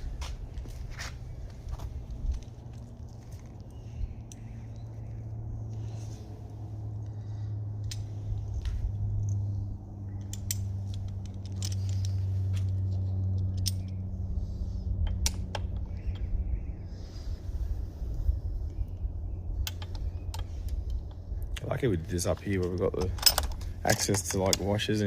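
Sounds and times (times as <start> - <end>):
steady low hum: 0.0 - 25.0
small metal clinks and taps: 10.2 - 14.0, 19.6 - 21.2.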